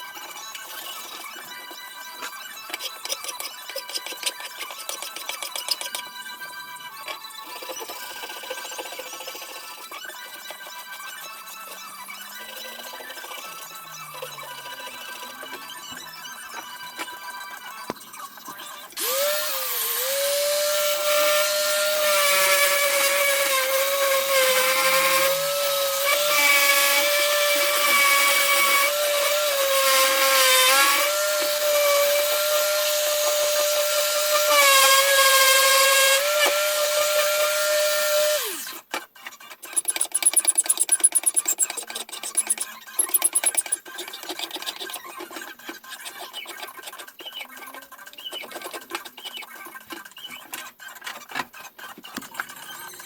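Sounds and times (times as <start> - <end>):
power tool motor whining: 19.0 - 38.8, 39.7 - 43.8
rhythmic scraping strokes: 39.7 - 45.4.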